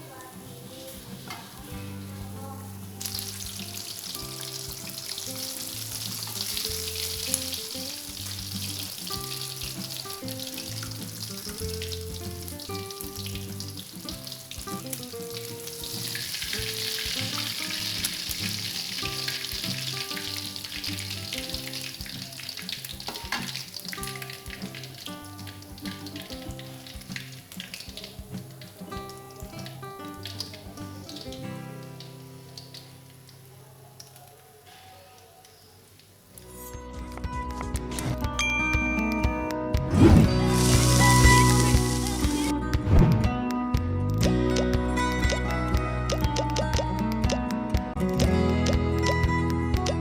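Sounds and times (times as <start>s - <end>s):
background music: 0.0s - 32.5s, 36.4s - 50.0s
fish sizzling in hot oil: 0.0s - 34.2s, 40.4s - 42.5s.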